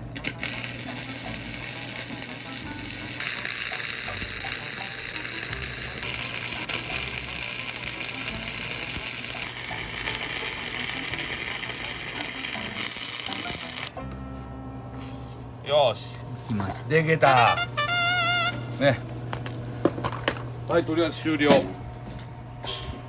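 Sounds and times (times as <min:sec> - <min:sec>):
welder arc crackling: 0:00.0 - 0:14.0.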